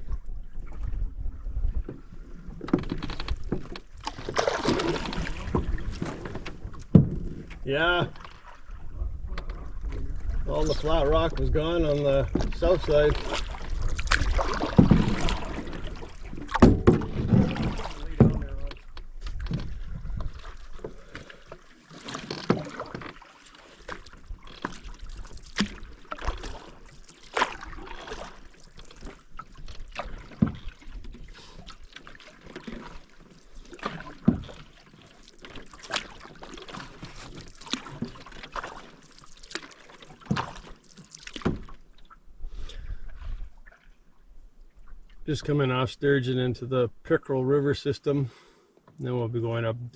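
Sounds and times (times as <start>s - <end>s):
paddle strokes in water: 0.0s - 45.6s
paddle knocks: 1.8s - 8.6s, 12.3s - 26.7s, 33.6s - 41.9s.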